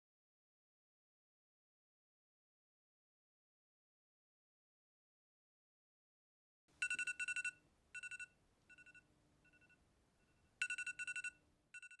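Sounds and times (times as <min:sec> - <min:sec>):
electronic alarm beeping: 0:06.8 - 0:09.8, 0:10.6 - 0:12.0.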